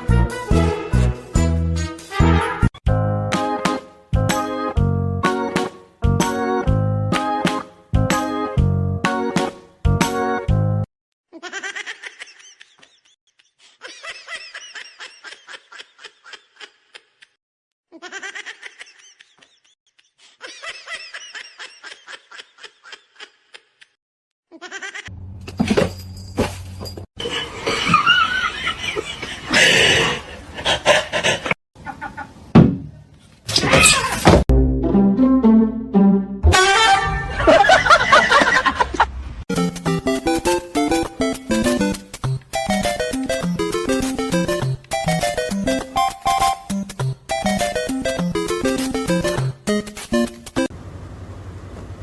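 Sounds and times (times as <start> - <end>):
high rapid laughter: 27.2 - 32.4, 36.7 - 39.1.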